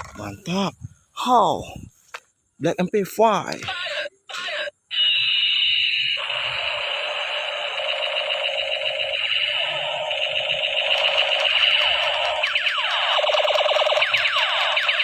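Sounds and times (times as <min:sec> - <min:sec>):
toy gun electronic rattle: 0:04.9 - 0:15.0.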